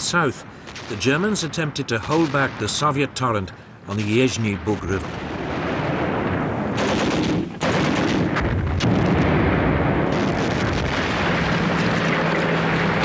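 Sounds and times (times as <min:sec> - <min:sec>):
artillery explosions: 0:00.0 - 0:13.0
gunfire: 0:05.0 - 0:13.0.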